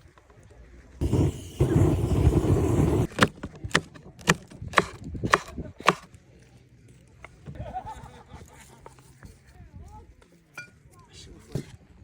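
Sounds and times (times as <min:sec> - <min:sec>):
knife chopping on wooden board: 0:03.1 - 0:06.1.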